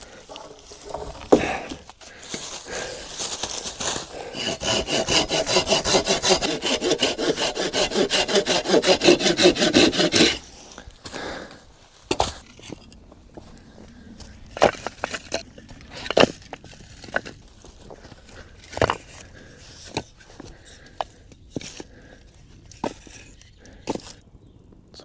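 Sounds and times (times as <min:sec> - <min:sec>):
hand saw cutting wood: 0:02.7 - 0:10.7, 0:14.6 - 0:17.4, 0:18.0 - 0:20.8.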